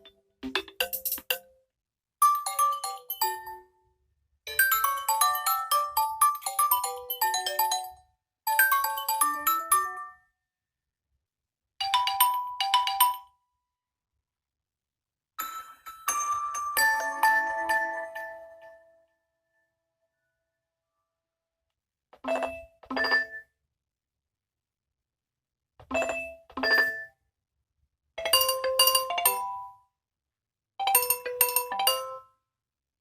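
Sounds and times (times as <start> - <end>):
phone ringtone chiming melodies: 2.2 - 3.6, 4.5 - 10.1, 15.4 - 19.0.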